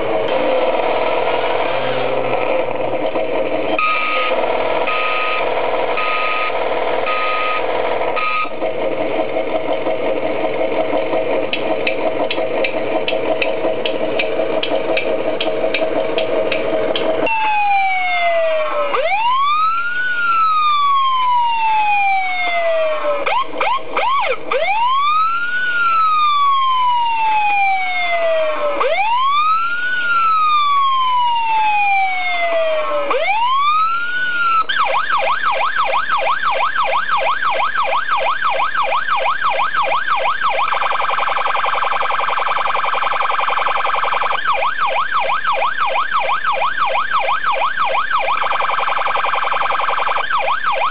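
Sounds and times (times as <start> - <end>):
clicking engine sound: 0.0 - 17.7, 22.9 - 24.9
electronic siren yelp: 3.7 - 8.6, 17.2 - 50.9
electronic siren wail: 3.7 - 8.7, 17.2 - 50.9.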